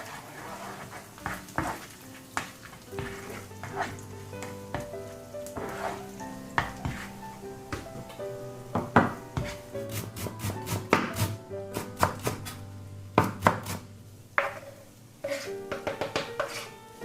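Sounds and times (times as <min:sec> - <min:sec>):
spatula scraping pan: 0:00.0 - 0:04.9, 0:05.5 - 0:07.3, 0:14.4 - 0:16.9
background music: 0:00.0 - 0:14.6, 0:15.2 - 0:17.0
food sizzling in oil: 0:00.0 - 0:17.0.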